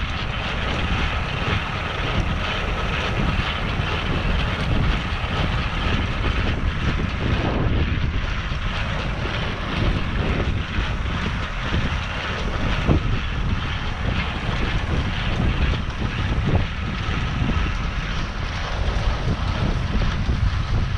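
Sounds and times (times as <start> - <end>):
steady machine hum: 0.0 - 20.9
wind buffeting microphone: 0.0 - 20.9.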